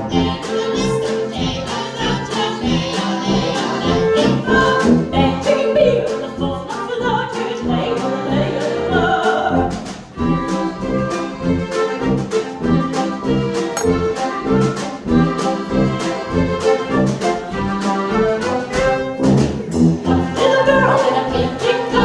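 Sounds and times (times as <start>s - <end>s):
people singing: 0.0s - 9.8s, 19.7s - 22.0s.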